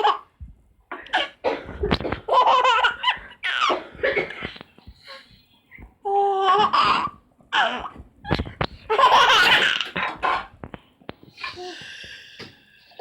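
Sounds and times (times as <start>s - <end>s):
baby laughing: 2.2s - 3.9s, 6.2s - 10.5s.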